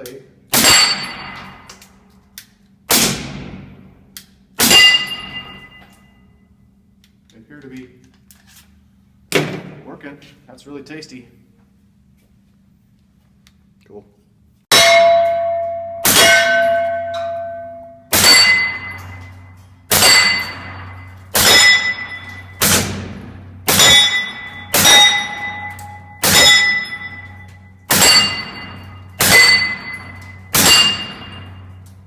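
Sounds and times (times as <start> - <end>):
bullets clanging on steel plates: 0.5 - 2.1, 4.6 - 6.3, 14.7 - 32.0.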